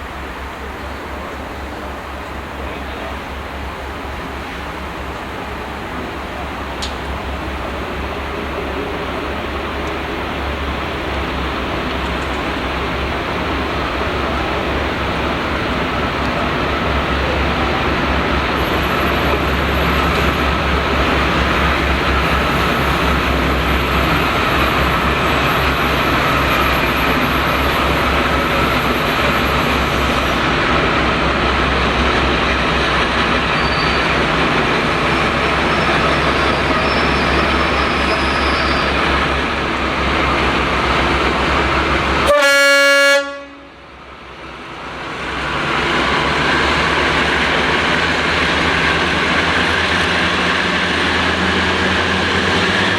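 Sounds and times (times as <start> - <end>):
train rumbling: 0.0 - 52.9
train horn blast: 42.2 - 43.9.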